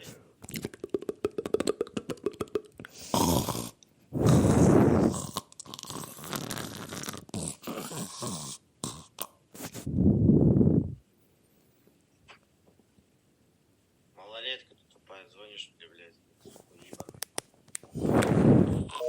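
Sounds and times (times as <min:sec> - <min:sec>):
person fake snoring: 0:02.3 - 0:09.3.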